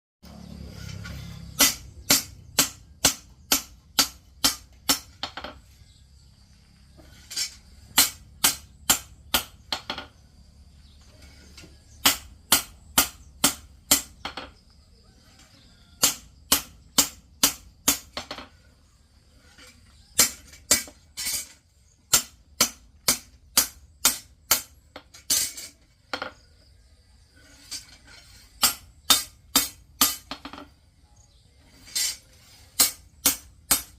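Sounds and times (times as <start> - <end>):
hammer striking metal on anvil: 1.4 - 5.2, 7.9 - 9.6, 11.9 - 14.4, 16.0 - 18.2, 22.1 - 25.6, 28.6 - 30.4, 32.8 - 33.9.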